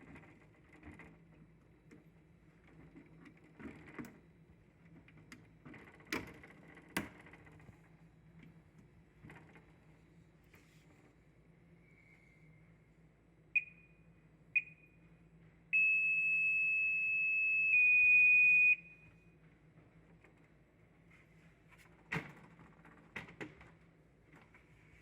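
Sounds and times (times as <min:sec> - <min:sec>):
fire alarm buzzer beeping: 0:13.6 - 0:15.1, 0:15.7 - 0:19.3.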